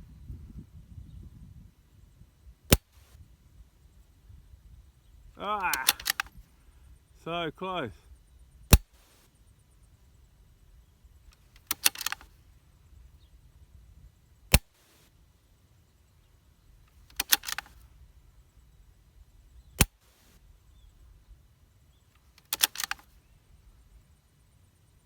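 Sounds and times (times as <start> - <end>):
rifle bolt metallic clicks: 2.7 - 2.9, 5.5 - 6.3, 11.3 - 12.3, 17.1 - 17.8, 22.2 - 23.1
rifle shot crack: 5.4 - 6.3.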